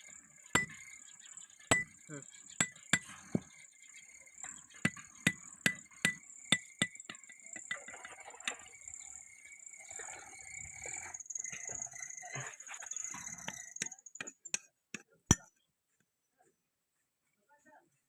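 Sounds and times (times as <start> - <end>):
hammer striking metal on anvil: 0.6 - 0.8, 1.7 - 2.0, 2.6 - 3.5, 4.8 - 7.7, 13.8 - 15.5.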